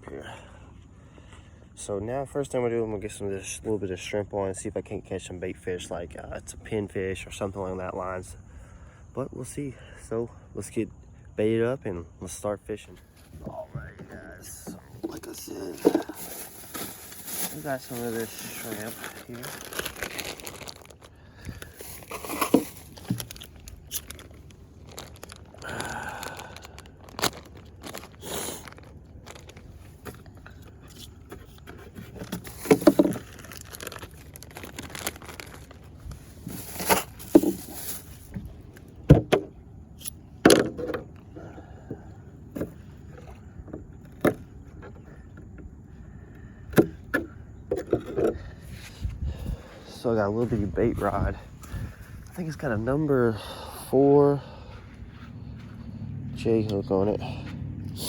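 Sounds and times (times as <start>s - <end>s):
hands handling fishing tackle: 13.1s - 41.3s.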